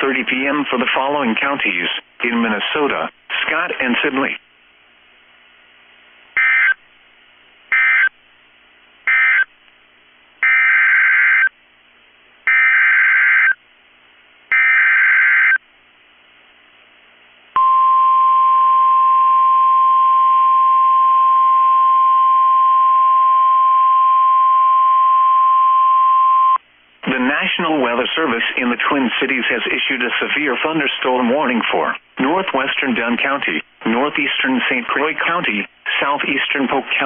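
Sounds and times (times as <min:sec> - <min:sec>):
steady weather radio alert tone: 0:06.4 - 0:06.8, 0:07.7 - 0:08.1, 0:09.1 - 0:09.5.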